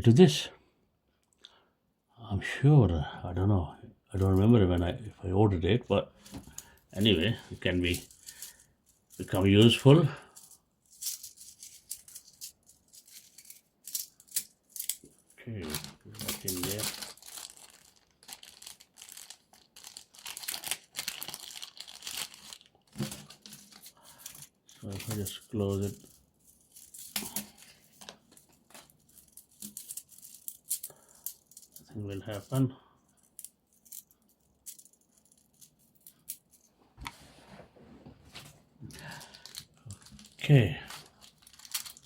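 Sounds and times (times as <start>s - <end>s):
packaging crinkling: 6.2s - 32.6s, 38.9s - 42.0s.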